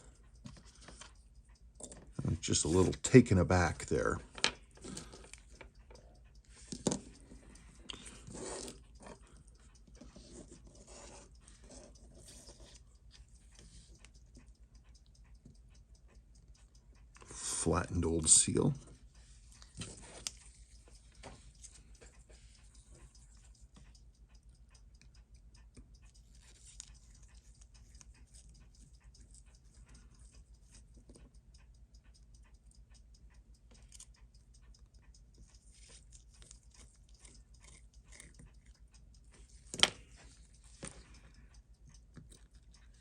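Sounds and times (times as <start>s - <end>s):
steady low hum: 0.0s - 43.0s
small tool clicks on watch parts: 19.5s - 43.0s.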